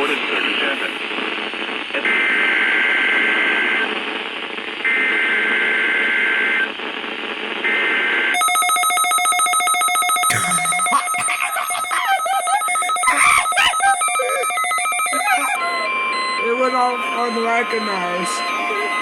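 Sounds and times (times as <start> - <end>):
radio static: 0.0 - 4.7, 10.3 - 19.0
rapid repeating alert beeps: 8.4 - 11.2, 11.8 - 19.0
digital data screech: 10.3 - 15.8.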